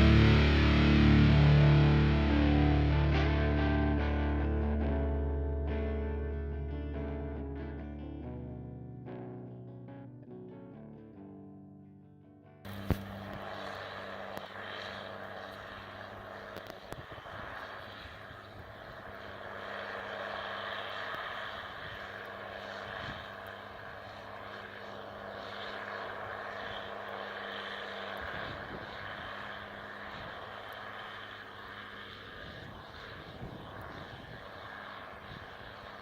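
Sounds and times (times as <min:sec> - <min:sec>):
combine harvester engine drone: 0:00.0 - 0:07.9, 0:12.7 - 0:36.0
small clicks: 0:16.5 - 0:17.0.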